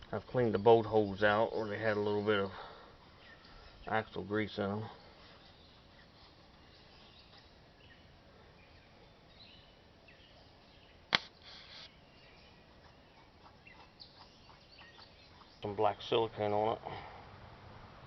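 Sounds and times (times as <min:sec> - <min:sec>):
faint bird chirps: 0:00.2 - 0:16.0
sharp click: 0:11.1 - 0:11.9
short hiss: 0:11.1 - 0:11.9.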